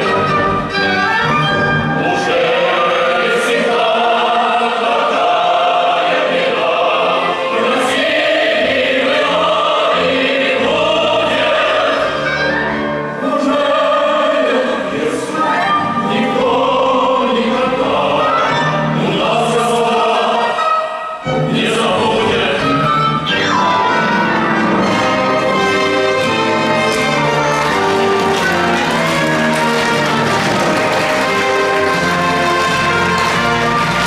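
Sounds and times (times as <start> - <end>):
symphony orchestra playing: 0.0 - 3.3, 22.7 - 34.0.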